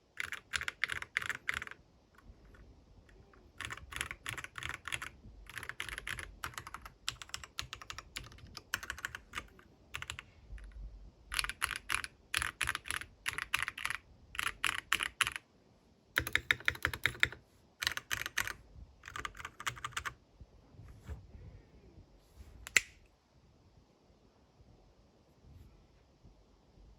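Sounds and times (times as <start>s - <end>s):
mechanical keyboard typing: 0.1s - 10.2s, 11.3s - 15.4s, 16.2s - 20.2s.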